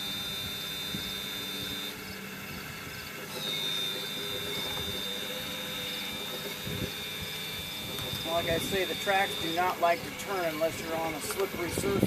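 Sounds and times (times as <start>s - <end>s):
toy excavator hydraulic whine: 0.0s - 12.0s.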